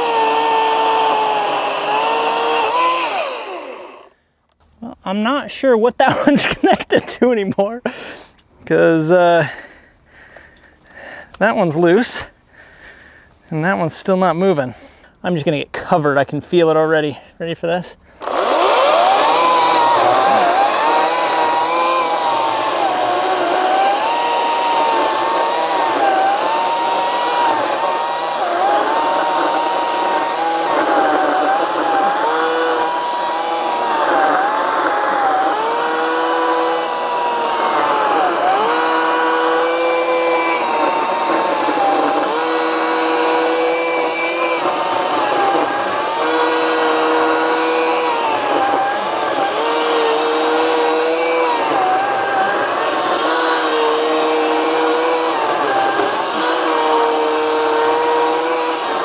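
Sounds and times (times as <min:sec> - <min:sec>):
electric chainsaw cutting wood: 0:00.0 - 0:04.2, 0:18.2 - 0:59.0.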